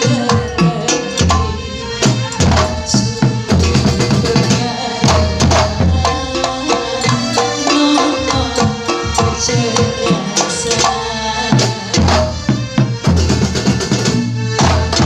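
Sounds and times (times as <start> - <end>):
pitched melody line: 0.0 - 13.8
frame drum ensemble beating: 0.0 - 15.0.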